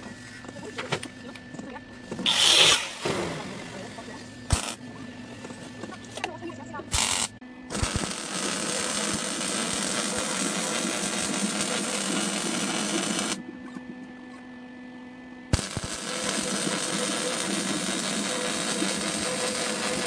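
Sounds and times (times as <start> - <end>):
steady welder hum: 0.0 - 20.0
welder arc crackling: 4.5 - 4.8, 6.9 - 13.4, 15.5 - 20.0.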